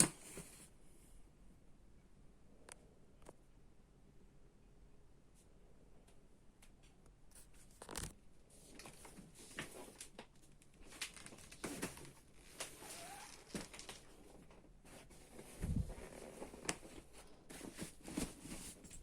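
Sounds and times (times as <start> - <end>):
rustling scrapes: 10.9 - 19.0.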